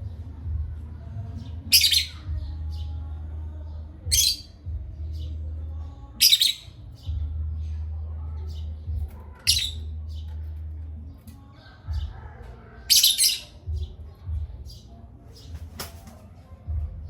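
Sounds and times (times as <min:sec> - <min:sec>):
parrots squawking: 0:01.7 - 0:02.2, 0:04.1 - 0:04.5, 0:06.2 - 0:06.7, 0:09.5 - 0:09.8, 0:12.9 - 0:13.6
soft bird chirps: 0:01.8 - 0:02.9, 0:06.2 - 0:06.7.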